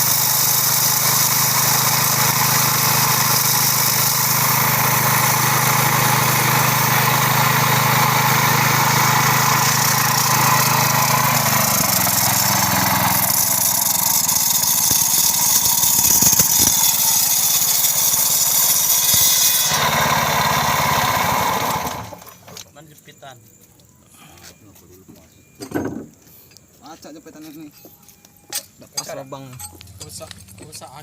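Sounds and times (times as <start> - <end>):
engine running: 0.0 - 18.9, 19.6 - 22.6
drill grinding concrete: 0.0 - 22.4.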